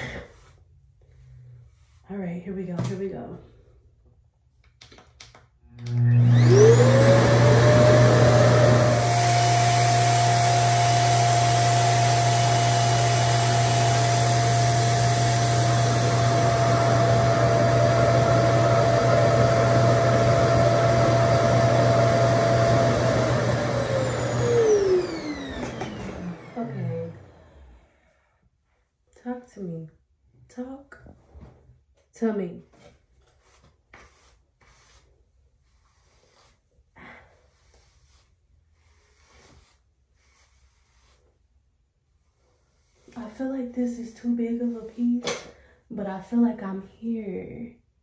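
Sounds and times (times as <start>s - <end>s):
hair dryer suction motor whining: 5.8s - 27.9s.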